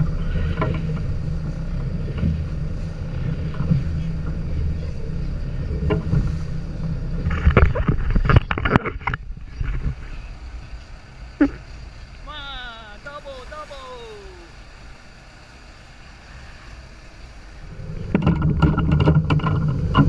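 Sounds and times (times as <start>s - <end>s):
boat engine rumble: 0.0s - 20.0s
sharp knocks and clatter: 18.0s - 20.0s.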